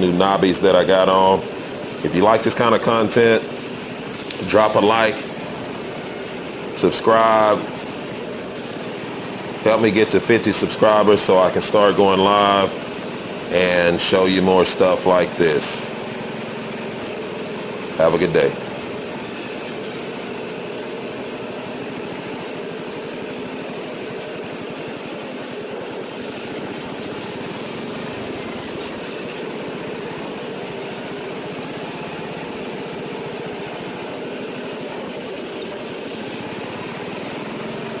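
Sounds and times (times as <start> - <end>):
thin high whine: 0.0 - 16.2
lawn mower engine running: 0.0 - 38.0.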